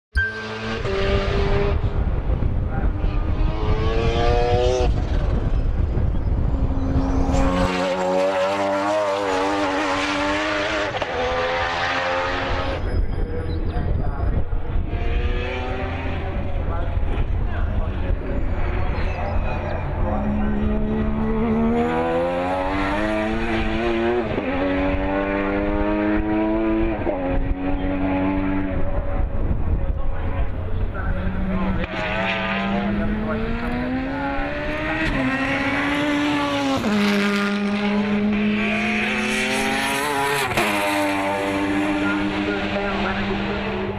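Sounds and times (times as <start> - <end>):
rotary race car engine revving: 0.2 - 12.9, 14.6 - 29.7, 30.4 - 43.9.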